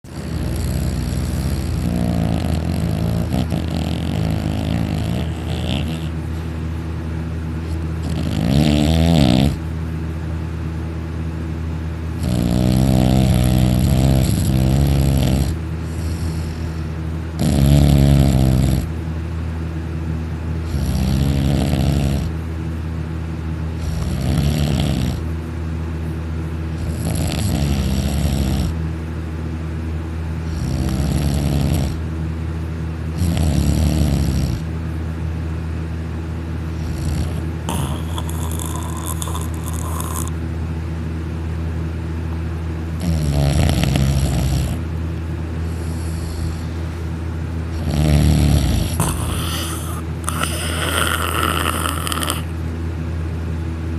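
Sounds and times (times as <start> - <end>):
steady low hum: 0.0 - 53.9
man snoring loudly: 0.1 - 6.2, 8.0 - 9.6, 12.2 - 16.8, 17.4 - 18.9, 20.7 - 22.3, 23.8 - 25.2, 26.8 - 28.8, 30.5 - 32.0, 33.2 - 34.6, 36.8 - 40.4, 43.0 - 44.8, 47.8 - 52.5.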